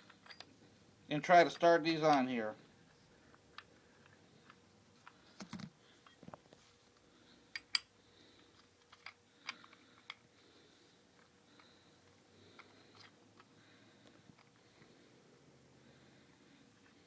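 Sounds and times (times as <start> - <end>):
small metal parts clicking: 0.0 - 0.5.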